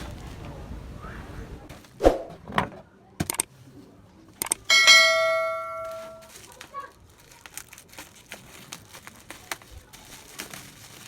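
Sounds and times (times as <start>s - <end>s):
bell-like ding: 4.7s - 6.2s.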